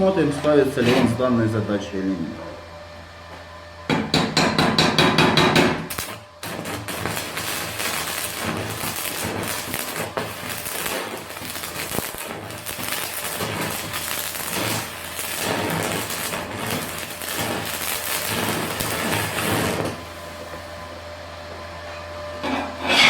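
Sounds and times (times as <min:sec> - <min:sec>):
welding arc crackling: 0:04.1 - 0:20.7.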